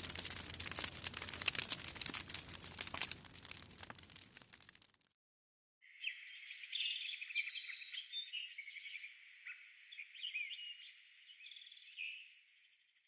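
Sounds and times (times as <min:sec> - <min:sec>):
small birds chirping: 0:05.9 - 0:12.8.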